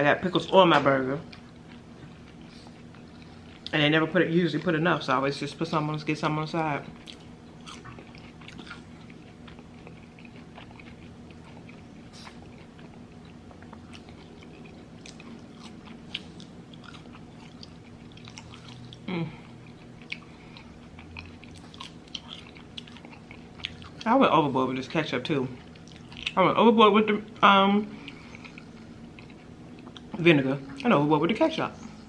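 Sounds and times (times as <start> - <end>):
person chewing and biting food: 1.0 - 3.8, 6.8 - 24.1, 25.6 - 26.4, 27.3 - 31.0.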